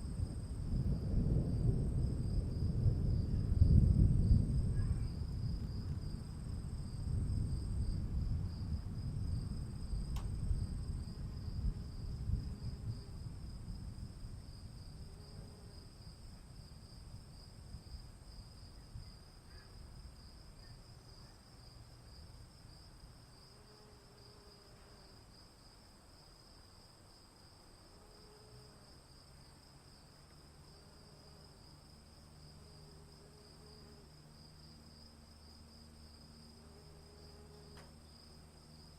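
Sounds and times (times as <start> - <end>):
thunder rumble: 0.0 - 14.8
insects chirring: 0.0 - 38.9.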